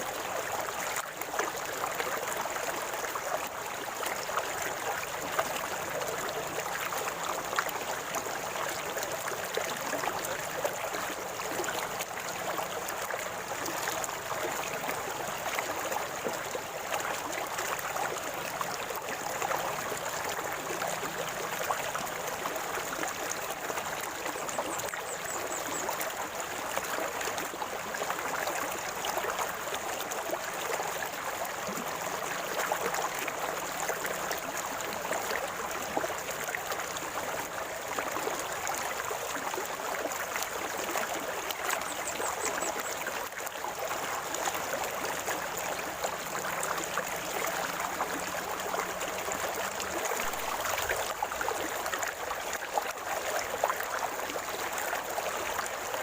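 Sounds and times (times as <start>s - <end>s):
river water flowing over rocks: 0.0s - 56.0s.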